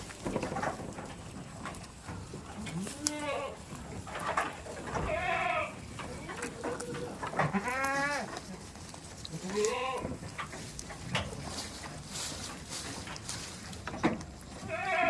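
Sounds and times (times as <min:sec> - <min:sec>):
goats bleating: 0:02.5 - 0:03.8, 0:04.9 - 0:08.7, 0:09.3 - 0:10.2, 0:14.6 - 0:15.0.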